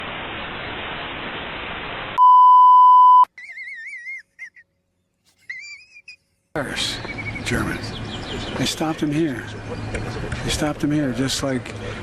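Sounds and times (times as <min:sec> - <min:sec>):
static hiss: 0:00.0 - 0:02.2
high steady beep: 0:02.2 - 0:03.3.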